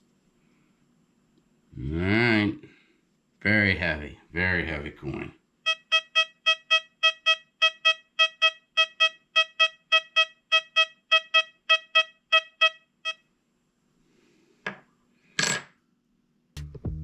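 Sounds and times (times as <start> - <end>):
metal detector beeping: 5.7 - 13.2.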